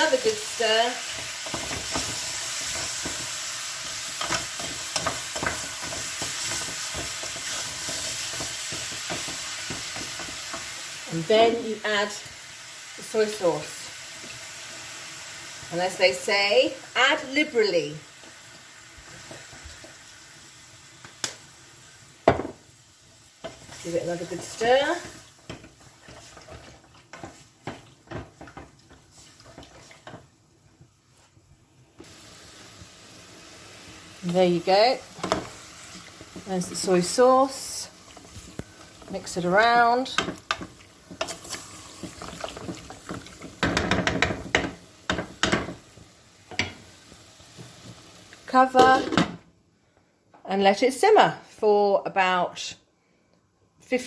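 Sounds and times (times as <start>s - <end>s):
utensil scraping frying pan: 0.0s - 10.8s, 23.4s - 30.3s
pork sizzling in hot oil: 0.0s - 49.2s.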